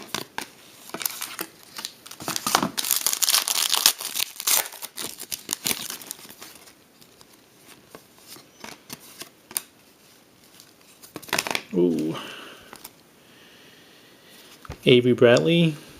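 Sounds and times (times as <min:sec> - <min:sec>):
wrapper tearing and crinkling: 0:00.0 - 0:07.4, 0:10.5 - 0:11.7
cards rustling and clicking: 0:00.0 - 0:09.7, 0:10.4 - 0:12.1.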